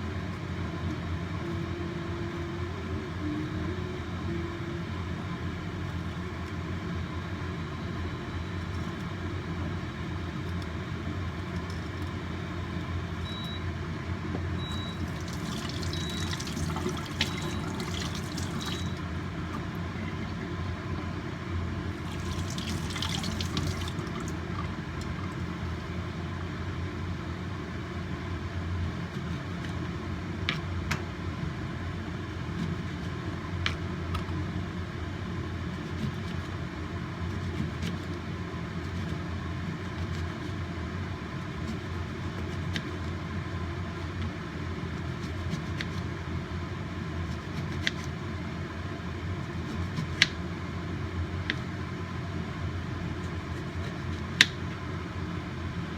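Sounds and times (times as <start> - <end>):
water heating rumble: 12.4 - 26.9.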